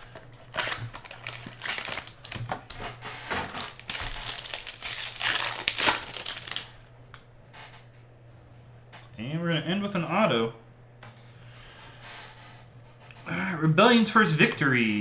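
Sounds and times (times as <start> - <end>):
wrapper crinkling and tearing: 0.0 - 6.9.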